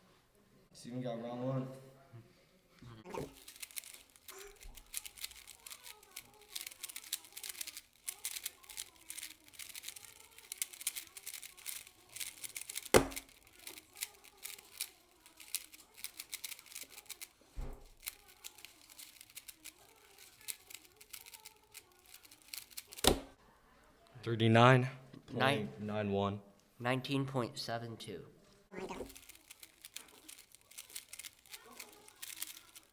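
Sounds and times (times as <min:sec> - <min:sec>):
puzzle cube clicking: 0:03.1 - 0:23.3, 0:28.8 - 0:32.9.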